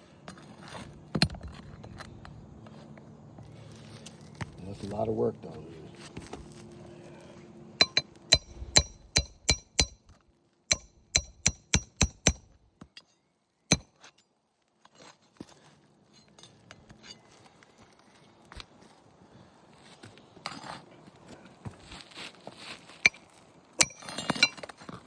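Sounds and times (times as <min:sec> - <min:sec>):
hammer striking metal: 0:07.8 - 0:10.1, 0:10.7 - 0:12.6, 0:13.7 - 0:14.0, 0:23.8 - 0:24.6.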